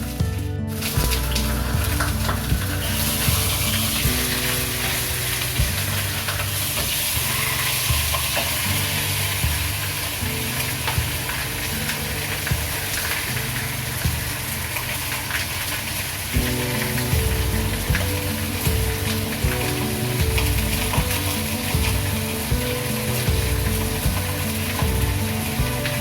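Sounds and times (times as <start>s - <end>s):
food sizzling in oil: 0.0s - 26.0s.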